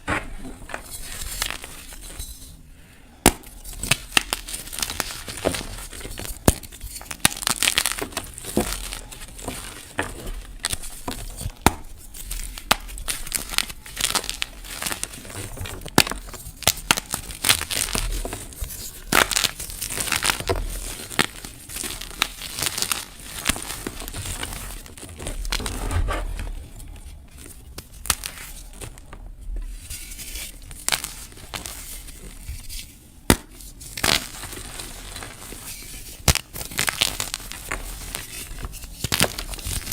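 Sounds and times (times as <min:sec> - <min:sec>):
chalk and petals crunching: 0:03.3 - 0:25.7, 0:29.7 - 0:39.9.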